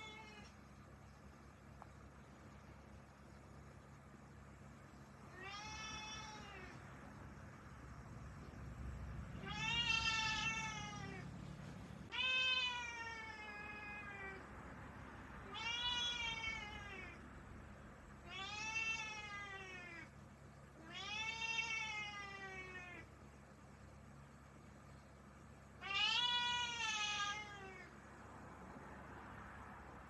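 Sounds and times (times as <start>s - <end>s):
cat meowing: 0.0s - 0.6s, 5.3s - 6.8s, 9.4s - 11.3s, 12.1s - 14.4s, 15.4s - 17.2s, 18.2s - 20.1s, 20.8s - 23.1s, 25.8s - 27.9s.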